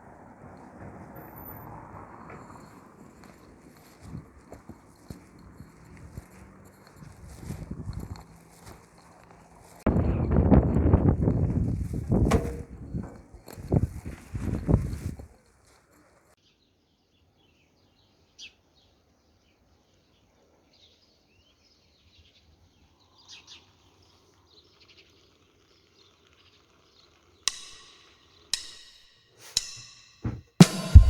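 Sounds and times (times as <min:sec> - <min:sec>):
sharp knocks: 0:12.2 - 0:13.2, 0:27.5 - 0:31.0
faint bird chirping: 0:16.4 - 0:27.4.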